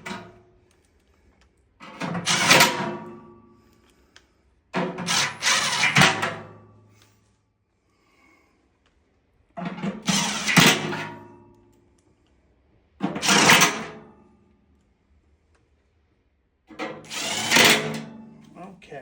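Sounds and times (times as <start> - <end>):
cordless drill driving screws: 17.0 - 18.0.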